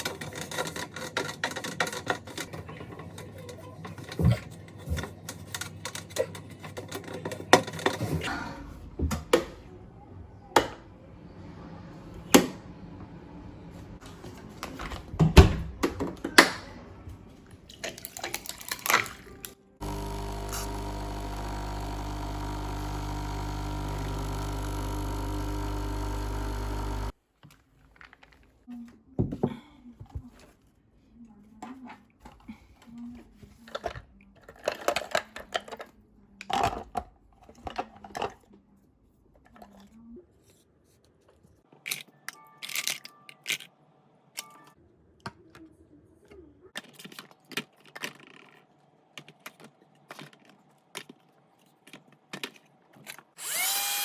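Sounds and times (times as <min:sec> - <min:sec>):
objects clicking and knocking: 0:00.0 - 0:08.1, 0:41.7 - 0:43.7, 0:46.8 - 0:53.4
small machine humming: 0:19.8 - 0:27.1, 0:53.4 - 0:54.0.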